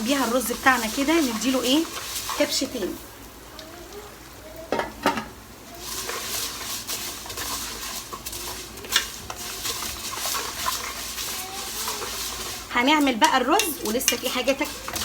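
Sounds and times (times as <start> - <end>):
pan sizzling: 0.0 - 15.0
utensil clinking against pot: 6.0 - 15.0
metal spoon knocking on pot: 12.9 - 15.0.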